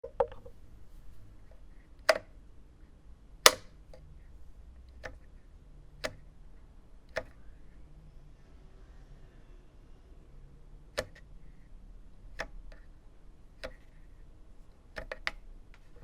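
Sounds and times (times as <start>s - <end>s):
light switch clicks: 3.5s - 3.7s.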